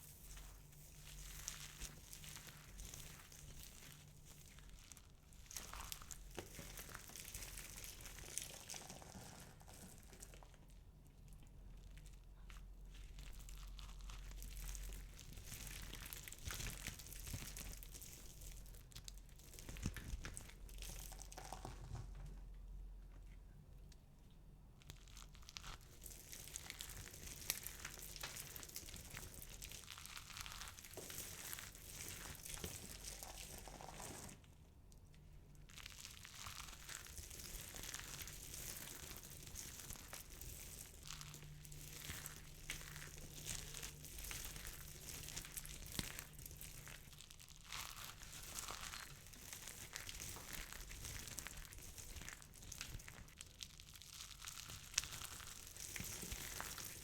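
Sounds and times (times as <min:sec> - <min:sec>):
dry soap crushed by hand: 0:01.0 - 0:10.6, 0:35.7 - 0:57.0.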